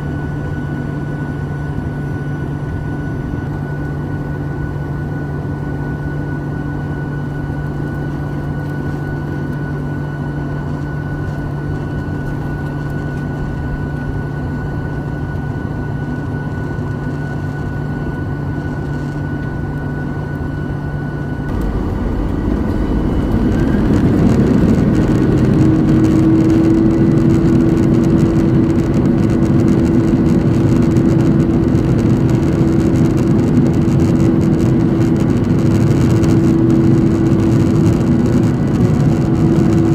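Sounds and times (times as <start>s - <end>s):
engine whine: 0.0s - 39.9s
jet engines spooling up: 19.9s - 39.9s.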